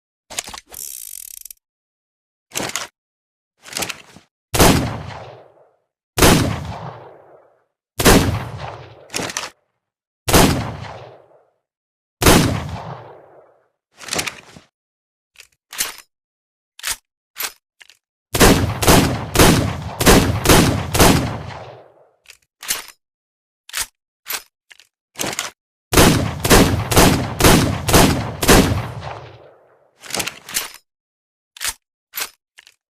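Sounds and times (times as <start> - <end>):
gunshots: 4.6 - 5.6, 6.2 - 9.5, 10.3 - 11.4, 12.2 - 13.5, 18.4 - 22.0, 25.9 - 29.6.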